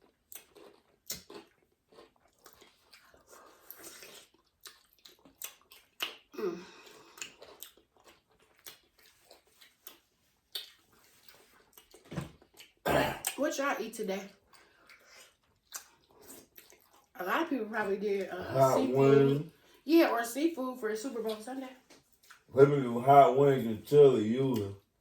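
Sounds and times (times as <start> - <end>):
person chewing seafood: 0.0 - 13.4, 14.4 - 17.1.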